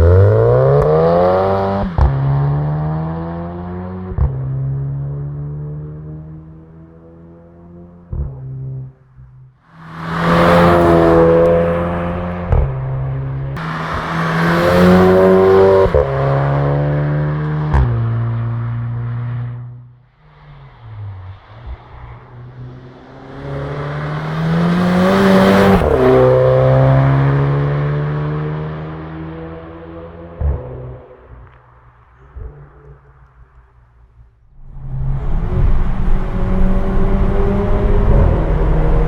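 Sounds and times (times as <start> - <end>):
car engine accelerating hard: 0.0 - 8.6, 9.7 - 19.4, 20.5 - 31.5, 34.6 - 39.0.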